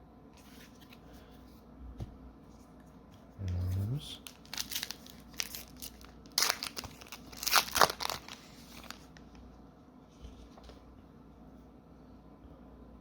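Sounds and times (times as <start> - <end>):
foil wrapper crinkling and tearing: 4.2 - 9.2.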